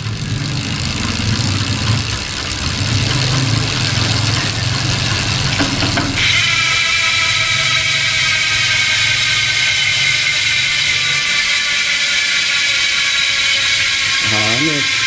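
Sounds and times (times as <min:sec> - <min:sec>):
bicycle hub freewheel buzzing: 0:00.0 - 0:15.0.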